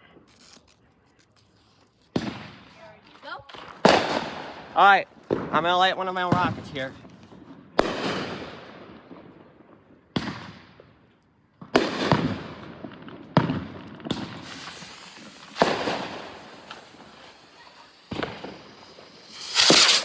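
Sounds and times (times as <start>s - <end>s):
fireworks bangs: 3.5s - 4.7s, 11.6s - 20.0s.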